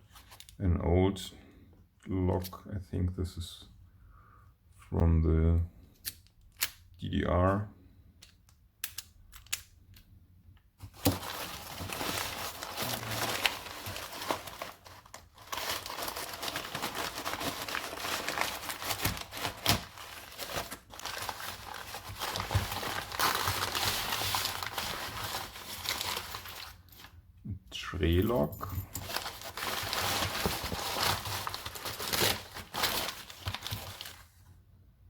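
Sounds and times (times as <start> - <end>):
packaging crumpling and crinkling: 10.8 - 27.2, 28.8 - 34.4.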